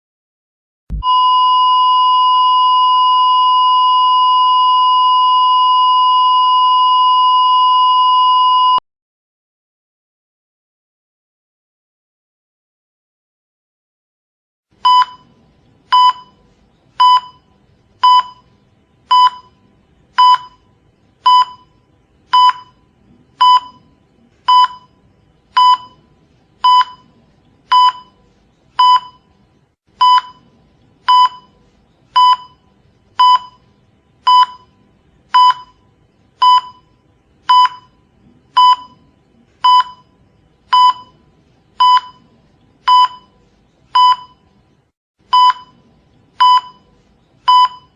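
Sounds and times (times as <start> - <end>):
cardiac monitor beeps: 0.9 - 8.8, 14.8 - 16.4, 17.0 - 18.5, 19.1 - 28.2, 28.8 - 29.4, 30.0 - 44.5, 45.3 - 47.9.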